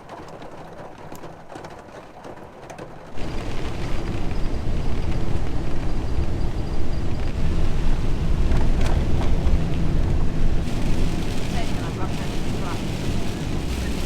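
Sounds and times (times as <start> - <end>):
light rain pattering: 0.0 - 14.0
van driving rumble: 3.0 - 14.0.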